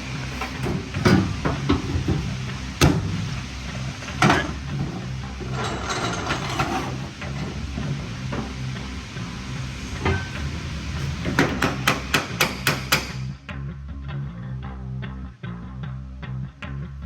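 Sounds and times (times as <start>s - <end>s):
steady low hum: 0.0s - 17.0s
rattling clatter: 3.8s - 10.6s
sharp knocks of tools: 11.3s - 13.3s.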